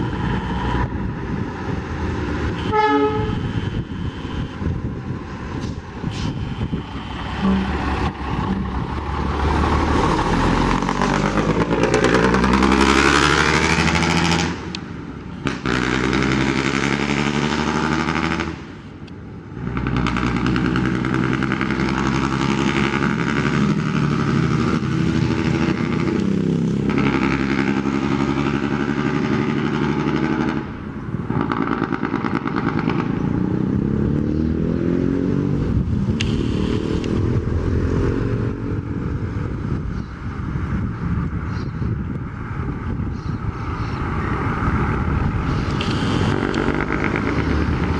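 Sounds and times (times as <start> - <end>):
diesel truck engine revving: 0.0 - 18.9, 19.5 - 39.8, 44.1 - 47.9.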